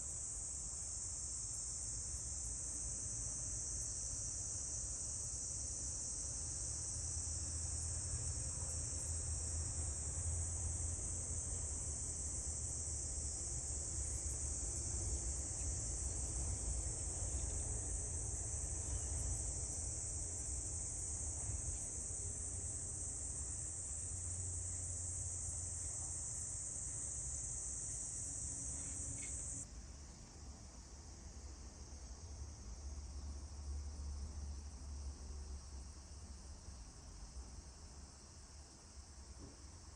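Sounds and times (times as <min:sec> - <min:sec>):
high-pitched insect trill: 0:00.0 - 0:34.8.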